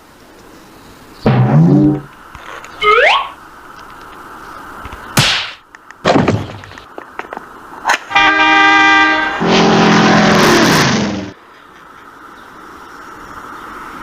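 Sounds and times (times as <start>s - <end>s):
noisy blast: 1.3s - 2.1s
sharp hit: 1.3s - 2.1s
horn honk: 8.1s - 10.3s.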